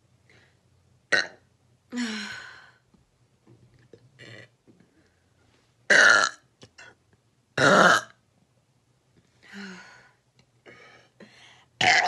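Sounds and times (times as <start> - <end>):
person burping: 1.1 - 1.4, 5.9 - 6.4, 7.6 - 8.2, 11.8 - 12.0.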